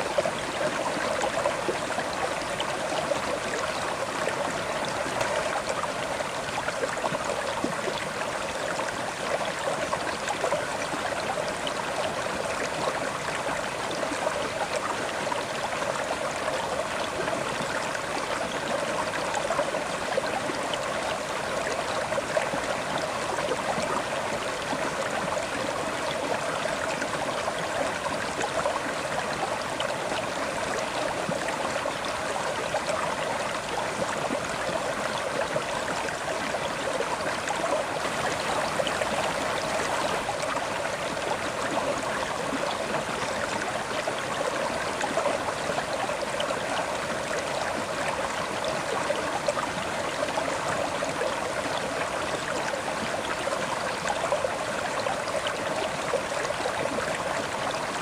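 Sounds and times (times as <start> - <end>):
river water flowing over rocks: 0.0 - 58.0.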